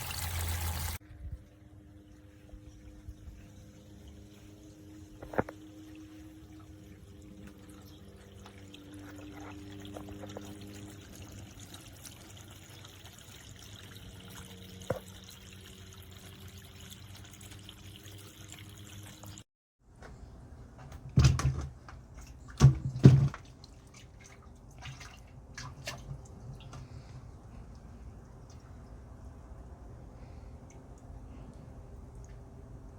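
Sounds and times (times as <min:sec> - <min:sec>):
fountain water trickling: 0:00.0 - 0:01.0, 0:05.6 - 0:19.4
faint low hum: 0:23.7 - 0:32.9.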